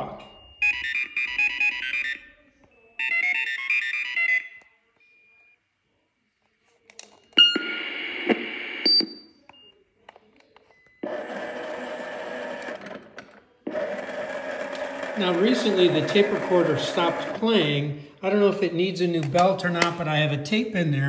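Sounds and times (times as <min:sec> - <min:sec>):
mechanical whirring: 0:11.0 - 0:17.4
rough mechanical sound: 0:11.1 - 0:17.5.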